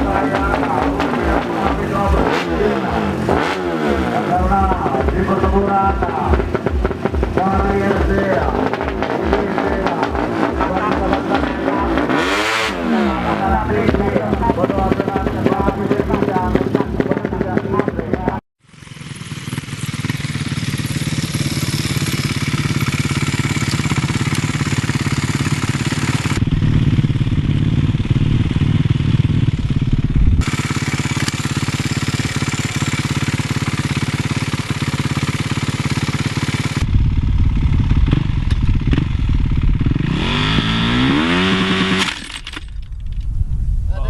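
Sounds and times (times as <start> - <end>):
motorcycle engines revving: 0.0 - 42.9.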